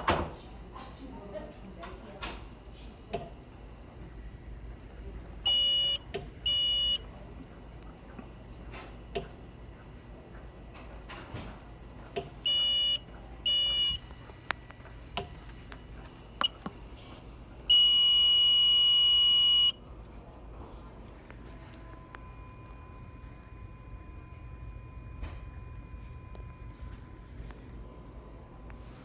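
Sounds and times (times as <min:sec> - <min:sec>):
smoke detector alarm: 0:05.4 - 0:07.2, 0:12.4 - 0:14.3, 0:16.4 - 0:19.8.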